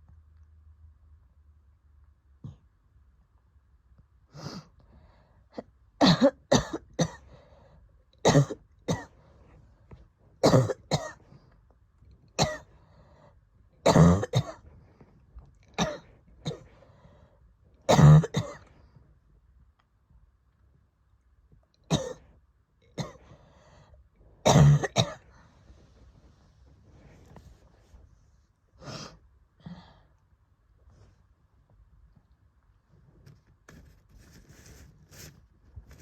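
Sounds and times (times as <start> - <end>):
person coughing: 5.6 - 7.3, 8.3 - 9.2, 10.4 - 11.2, 12.4 - 12.7, 13.8 - 14.6, 15.8 - 16.7, 17.9 - 18.7, 21.9 - 22.2, 23.0 - 23.3, 24.5 - 25.3.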